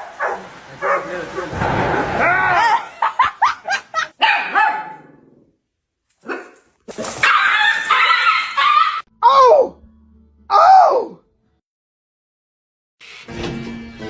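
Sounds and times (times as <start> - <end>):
dog barking: 0.0 - 1.1, 4.2 - 5.1, 6.2 - 6.6.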